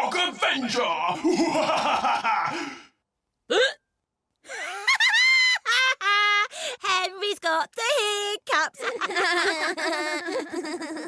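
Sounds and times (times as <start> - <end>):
boy hiccuping: 3.5 - 3.8.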